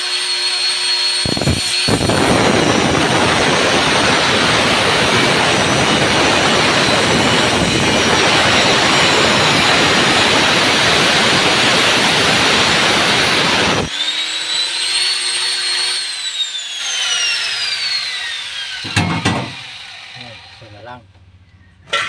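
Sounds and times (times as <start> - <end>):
grinder motor spinning down: 0.0 - 20.9
angle grinder grinding steel: 0.0 - 21.0.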